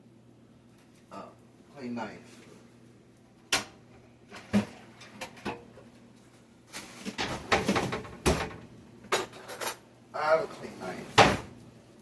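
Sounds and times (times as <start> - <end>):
kitchen utensils clicking and clattering: 7.0 - 9.8.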